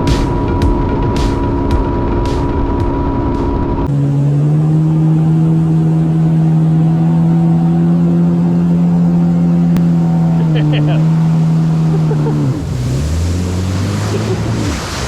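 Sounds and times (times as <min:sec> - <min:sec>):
music: 0:00.0 - 0:03.9
watercraft engine droning: 0:00.0 - 0:15.0.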